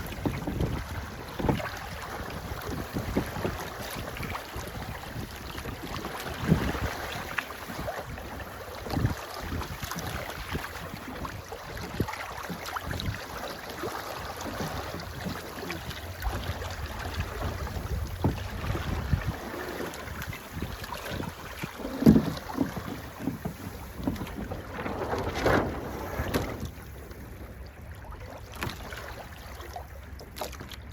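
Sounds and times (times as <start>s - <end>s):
wind buffeting microphone: 0.0s - 13.4s, 14.3s - 28.3s
water rushing: 10.2s - 29.8s.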